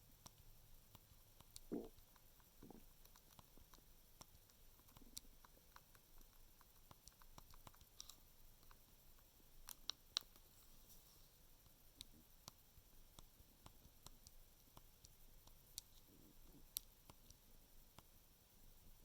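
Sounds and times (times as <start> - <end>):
faint clicks: 0.2 - 10.7, 11.6 - 18.1
stomach gurgling: 1.5 - 3.0.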